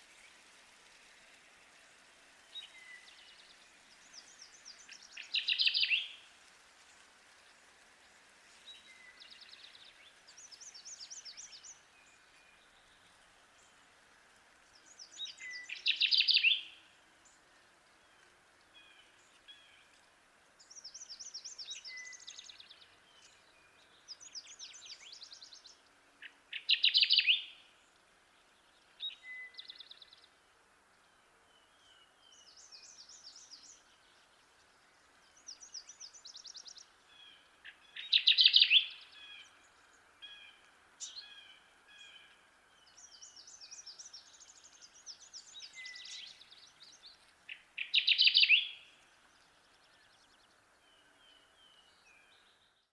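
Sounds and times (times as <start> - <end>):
warbler singing chip-chip-too-weet: 2.5 - 6.2, 14.8 - 16.8, 20.6 - 27.6, 35.2 - 52.9
other birds singing rapid songs: 20.6 - 27.5, 31.6 - 40.1, 42.8 - 52.9.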